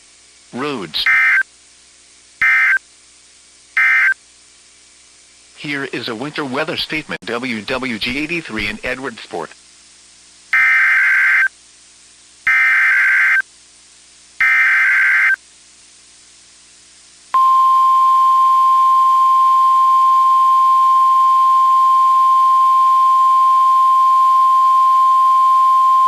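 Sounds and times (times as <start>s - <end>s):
steady warning alarm tone: 1.0s - 1.4s, 2.4s - 2.8s, 3.8s - 4.2s, 10.6s - 11.5s, 12.5s - 13.4s, 14.4s - 15.4s
screeching data bursts: 1.0s - 1.5s, 2.4s - 2.8s, 3.8s - 4.2s, 10.5s - 11.5s, 12.5s - 13.4s, 14.4s - 15.4s.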